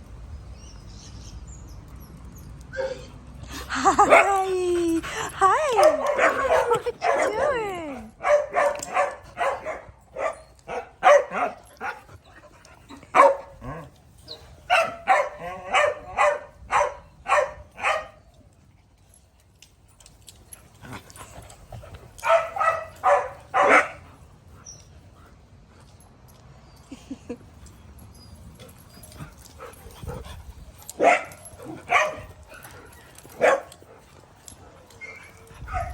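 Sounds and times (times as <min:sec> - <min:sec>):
small dogs barking: 0:05.9 - 0:12.0, 0:13.1 - 0:13.6, 0:14.7 - 0:18.1, 0:22.2 - 0:24.0, 0:31.0 - 0:32.3, 0:33.4 - 0:33.7.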